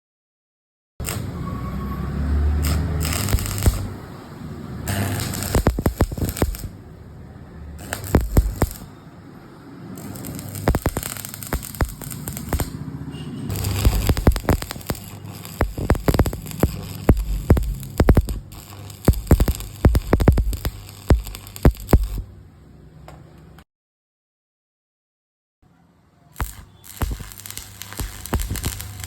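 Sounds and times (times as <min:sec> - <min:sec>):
sharp welding pops: 0:01.0 - 0:01.4, 0:02.5 - 0:04.1, 0:04.8 - 0:06.8, 0:07.8 - 0:08.9, 0:10.0 - 0:12.8, 0:13.5 - 0:22.3, 0:26.4 - 0:29.0
welding arc crackling: 0:01.0 - 0:01.5, 0:02.1 - 0:07.0, 0:07.6 - 0:08.9, 0:09.8 - 0:12.8, 0:13.5 - 0:22.3, 0:26.4 - 0:29.0.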